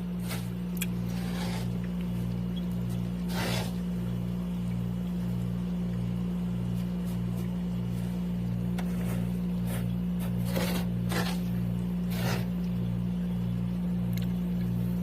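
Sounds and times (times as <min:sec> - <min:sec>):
pulsing low hum: 0:00.0 - 0:15.0
ice scraping and cracking: 0:08.9 - 0:12.5.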